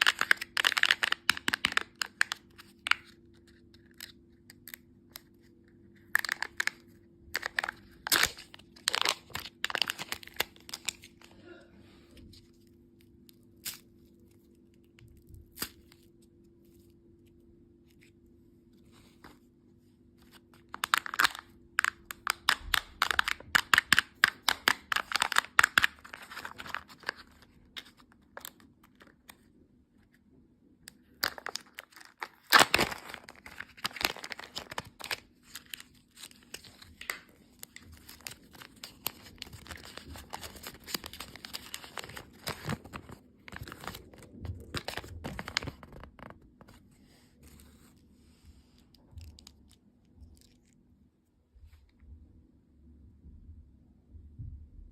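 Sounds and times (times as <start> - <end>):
candy wrappers crinkling: 0.0 - 11.4, 20.2 - 29.5, 31.0 - 46.8, 48.8 - 50.8.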